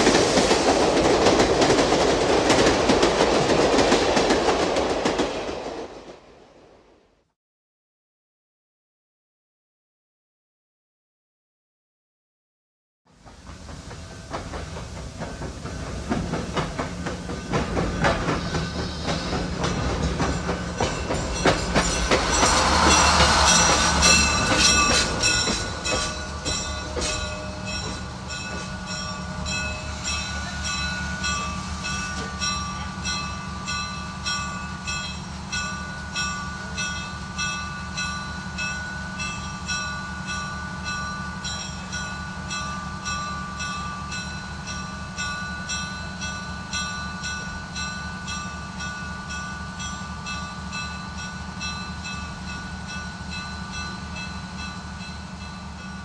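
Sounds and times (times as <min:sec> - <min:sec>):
train clickety-clack over rail joints: 0:00.0 - 0:06.5, 0:13.1 - 0:56.0
high-pitched wheel squeal: 0:21.8 - 0:27.6.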